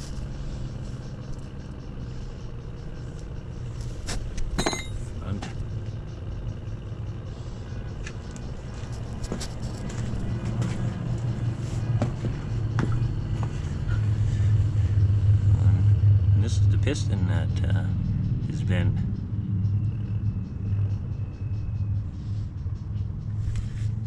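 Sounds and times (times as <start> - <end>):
low motor drone: 0.0 - 24.0
metal clinks and knocks: 4.2 - 5.7.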